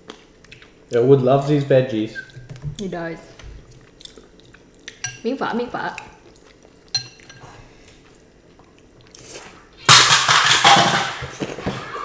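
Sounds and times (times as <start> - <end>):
cutlery clinking on dish: 6.9 - 7.4.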